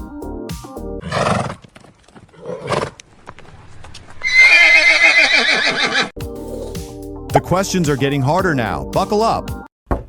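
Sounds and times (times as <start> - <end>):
horse whinnying: 1.0 - 1.7, 4.2 - 6.1
horse blowing: 4.2 - 6.1.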